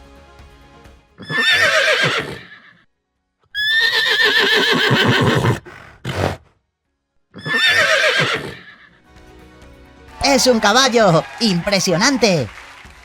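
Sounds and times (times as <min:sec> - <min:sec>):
horse whinnying: 0:01.2 - 0:02.8, 0:03.6 - 0:06.5, 0:07.4 - 0:09.0.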